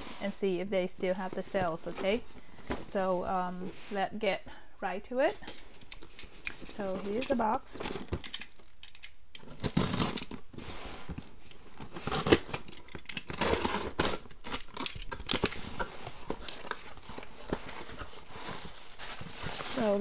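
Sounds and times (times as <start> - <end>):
tape ripping off cardboard box: 9.4 - 10.4, 11.8 - 15.6.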